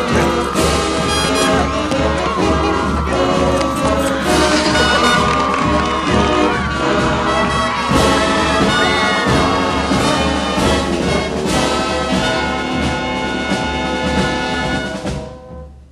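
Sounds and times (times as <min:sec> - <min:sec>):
brass-led orchestral music: 0:00.0 - 0:15.9.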